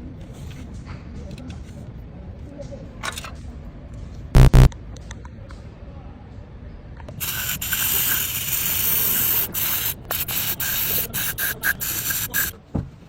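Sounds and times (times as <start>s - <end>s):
pressurised spray hissing: 7.2s - 12.6s.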